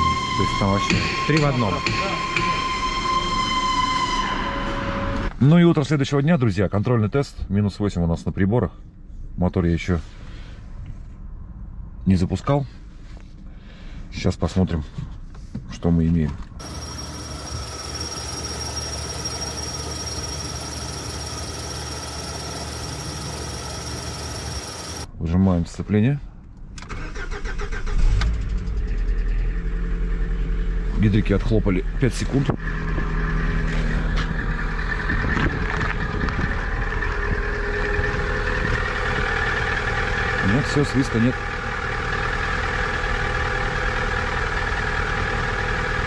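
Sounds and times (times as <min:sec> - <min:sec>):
car engine running: 0:16.6 - 0:25.1, 0:28.5 - 0:46.0
steady high-pitched whine: 0:16.6 - 0:25.2, 0:31.8 - 0:46.0.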